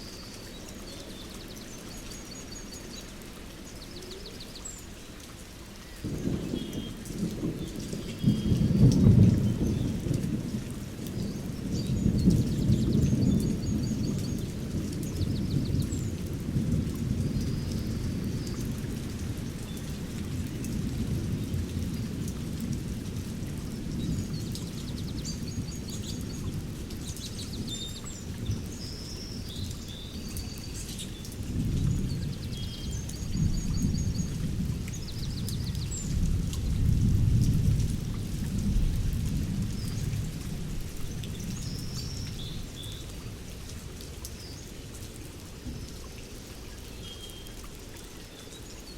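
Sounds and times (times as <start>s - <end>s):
steady rain: 0.0s - 48.9s
thunder rumbling: 6.0s - 27.7s, 31.4s - 42.7s.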